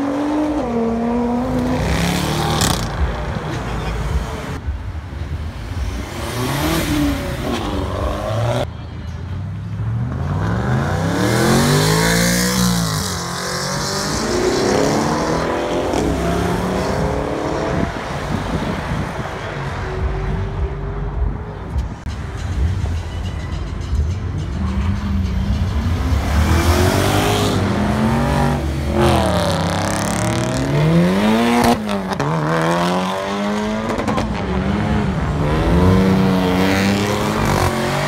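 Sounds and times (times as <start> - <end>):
car engines revving past: 5.6 - 8.7, 9.9 - 20.4, 25.6 - 38.0.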